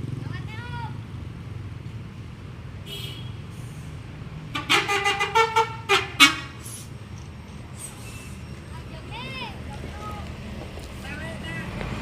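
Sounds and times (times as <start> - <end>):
multi-tone air horn tune: 4.6 - 6.6.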